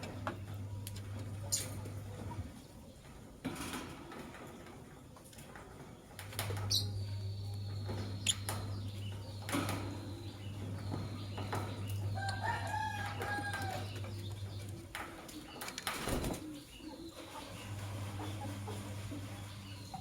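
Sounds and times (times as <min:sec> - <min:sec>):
lovebirds chirping: 0:06.6 - 0:17.8.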